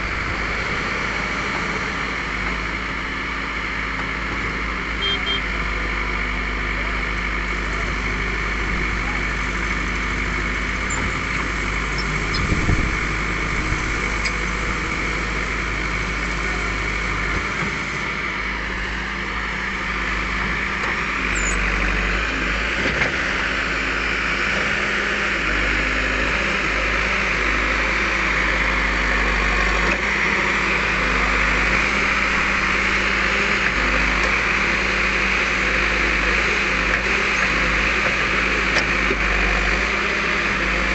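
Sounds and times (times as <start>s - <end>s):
heavy diesel engine running: 0.0s - 40.9s.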